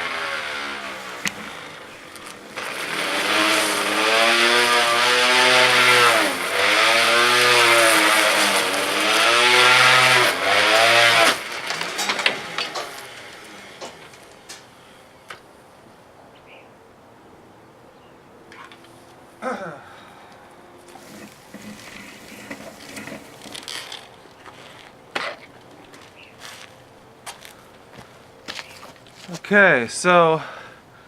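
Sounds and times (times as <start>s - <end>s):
electric string trimmer motor: 0.0s - 14.7s, 20.9s - 24.9s.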